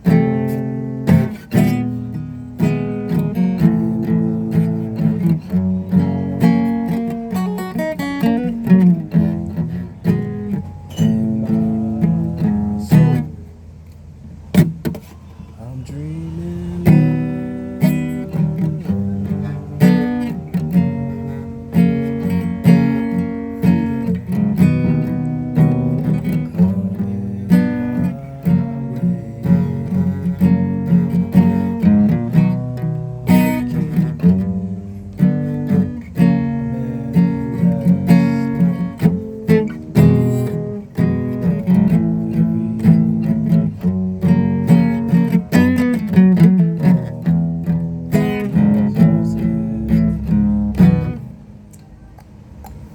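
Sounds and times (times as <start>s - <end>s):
acoustic guitar strumming: 0.0s - 52.9s.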